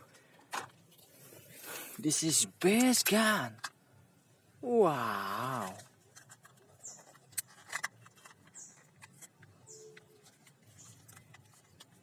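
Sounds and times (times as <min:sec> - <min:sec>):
small bird chirping: 0:06.7 - 0:07.4, 0:08.3 - 0:11.2.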